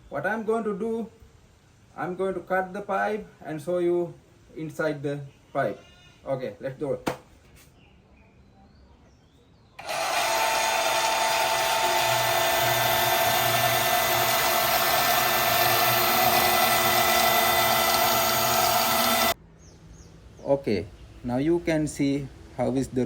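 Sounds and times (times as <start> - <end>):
power tool cutting steel pipe: 9.8 - 19.4.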